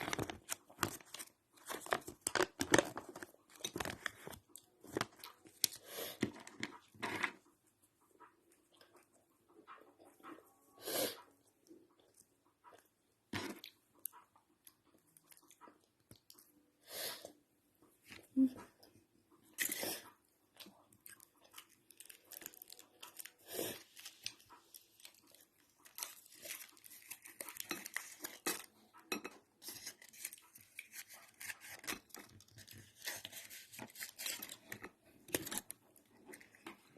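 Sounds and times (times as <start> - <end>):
wrapper crinkling: 0.0 - 5.8, 21.6 - 28.7.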